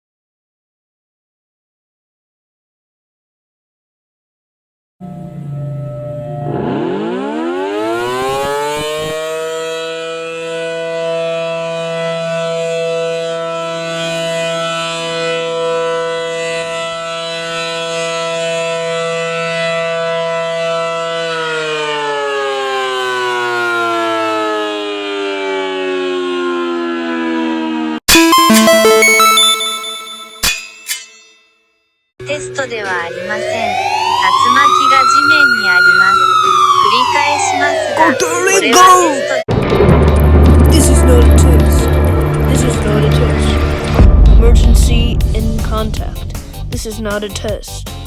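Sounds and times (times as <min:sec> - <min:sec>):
civil defense siren: 0:05.0 - 0:28.0, 0:32.2 - 0:44.4.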